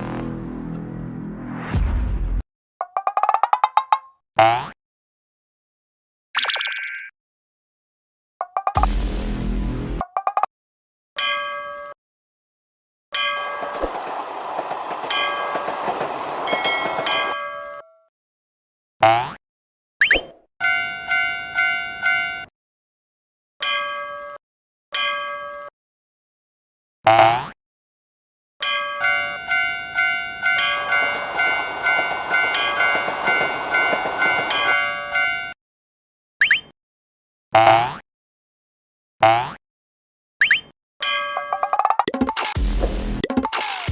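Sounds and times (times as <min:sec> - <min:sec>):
crossing warning bell clanging: 0:13.2 - 0:17.9, 0:20.6 - 0:22.5, 0:28.6 - 0:35.6
train rushing past: 0:13.5 - 0:17.4, 0:30.6 - 0:35.4.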